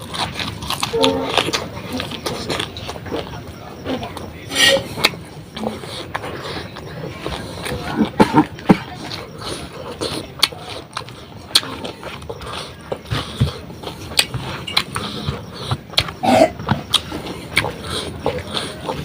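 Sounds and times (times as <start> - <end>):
wet chewing and lip smacking: 0.0 - 19.0
throat sound: 7.7 - 9.0, 13.0 - 19.0.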